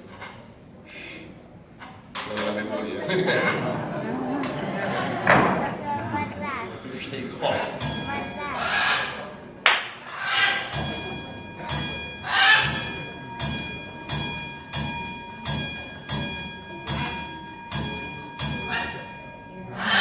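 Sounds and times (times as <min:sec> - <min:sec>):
bell strikes ringing on: 0:07.8 - 0:08.9, 0:10.6 - 0:20.0.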